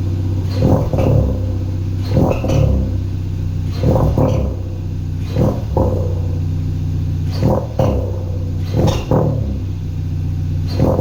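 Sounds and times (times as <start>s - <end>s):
car engine running: 0.0s - 11.0s.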